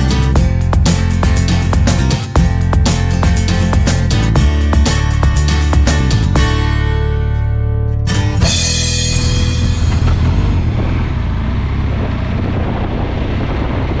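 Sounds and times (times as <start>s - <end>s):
rock music with drums: 0.0s - 7.2s, 8.2s - 10.6s
loud ringing hit: 8.4s - 11.6s.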